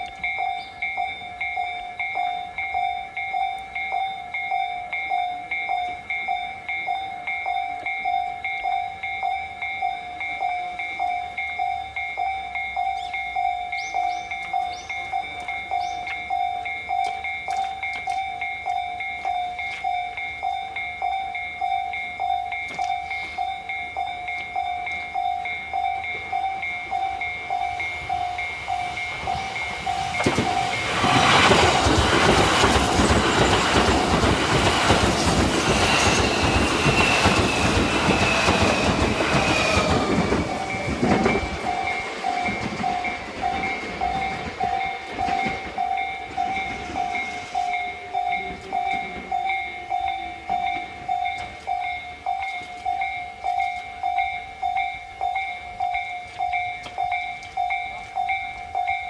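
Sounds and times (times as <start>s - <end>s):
level crossing bell ringing: 0.0s - 59.0s
train passing: 0.0s - 59.0s
wheels clattering over rail joints: 27.4s - 47.8s.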